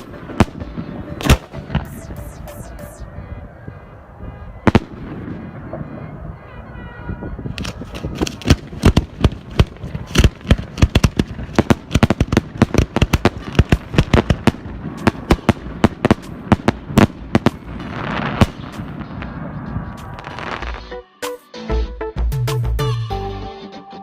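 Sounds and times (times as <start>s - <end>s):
fireworks bangs: 0.0s - 20.9s
fireworks hissing crackle: 7.5s - 20.9s.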